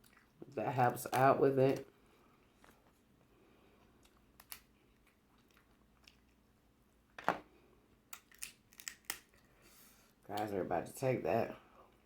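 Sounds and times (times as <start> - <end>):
person chewing food: 0.0 - 0.4, 2.3 - 6.6.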